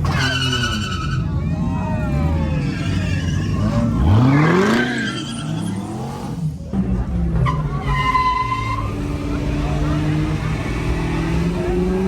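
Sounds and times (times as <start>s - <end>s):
tyre squeal: 0.0s - 6.0s, 7.4s - 9.1s
car engine revving hard: 3.6s - 6.4s, 8.8s - 12.0s.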